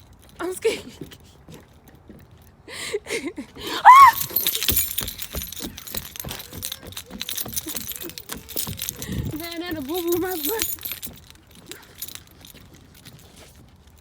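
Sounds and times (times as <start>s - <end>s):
woman screaming: 3.6s - 4.7s
clicking and jingling: 3.6s - 14.0s.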